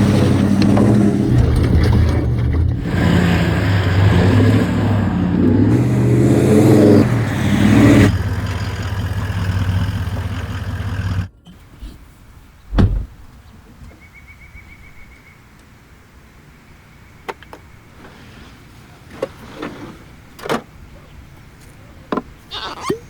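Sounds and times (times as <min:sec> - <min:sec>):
vehicle engine running: 0:00.0 - 0:11.3
thump: 0:12.7 - 0:13.2.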